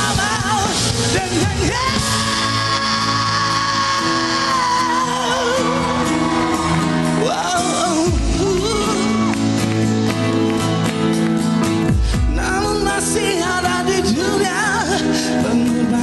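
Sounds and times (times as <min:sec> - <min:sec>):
pop-rock band music: 0:00.0 - 0:16.0.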